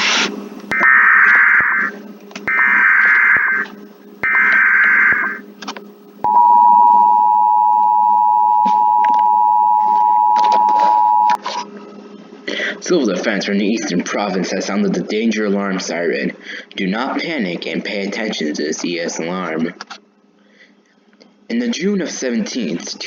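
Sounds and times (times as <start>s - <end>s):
buzzy data bursts: 0.7s - 5.5s
two-tone attention signal: 6.3s - 11.4s.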